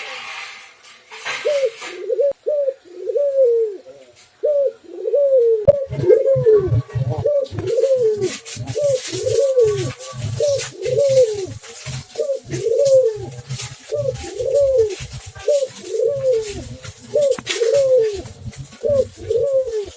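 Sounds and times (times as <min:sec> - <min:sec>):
dove cooing: 0:01.2 - 0:19.9.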